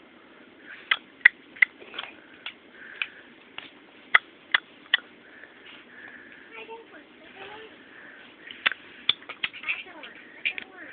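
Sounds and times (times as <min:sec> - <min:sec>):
soft breathy mouth sounds: 0:07.4 - 0:10.9.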